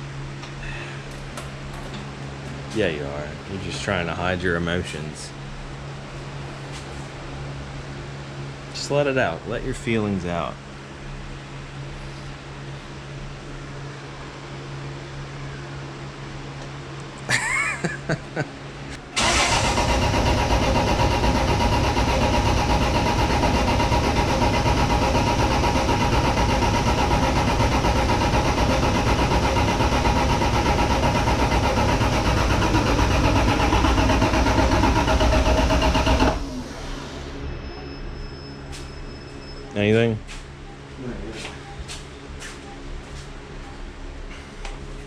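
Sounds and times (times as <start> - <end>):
engine cranking on starter: 19.2 - 37.3.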